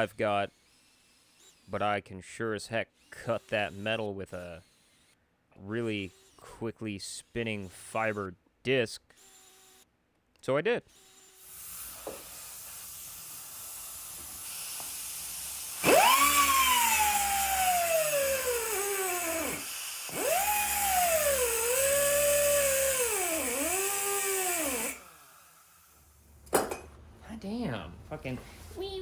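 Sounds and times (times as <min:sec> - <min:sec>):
cut-off disc grinding steel: 0:10.9 - 0:26.0.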